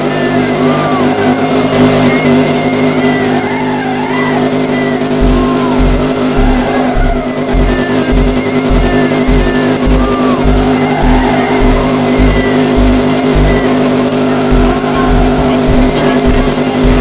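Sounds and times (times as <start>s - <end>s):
car engine running: 0.0s - 17.0s
music with heavy bass beat: 5.2s - 13.7s, 14.5s - 17.0s.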